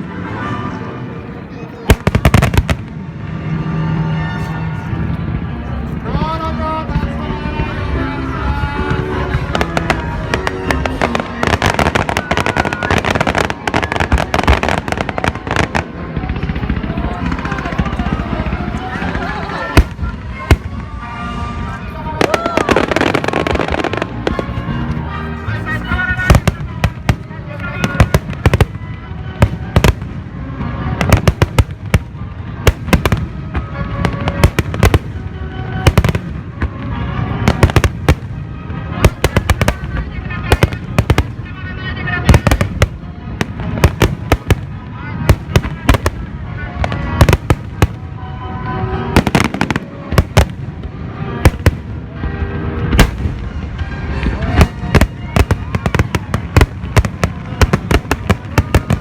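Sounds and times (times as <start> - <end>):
background music: 0.0 - 59.0
deep firework bangs: 1.9 - 3.1, 8.8 - 41.4, 49.0 - 59.0
fireworks crackling pops: 49.0 - 59.0.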